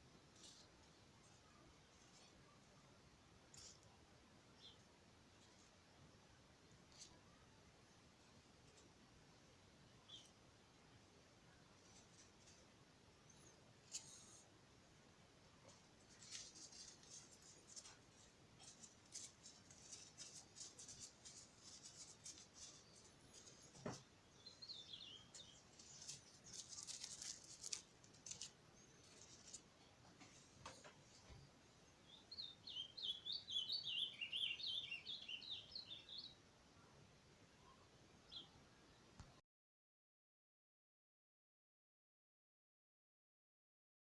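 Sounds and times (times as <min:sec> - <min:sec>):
bird singing warbling chirps: 0:24.3 - 0:26.6, 0:32.0 - 0:36.4.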